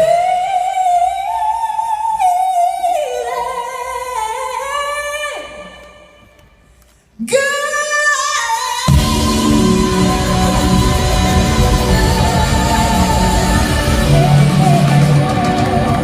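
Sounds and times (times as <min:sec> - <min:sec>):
person singing long notes: 0:08.9 - 0:16.0.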